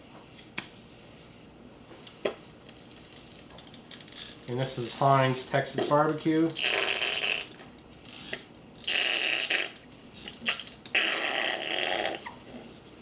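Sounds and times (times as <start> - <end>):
squeeze bottle sputtering sauce: 6.5 - 12.4.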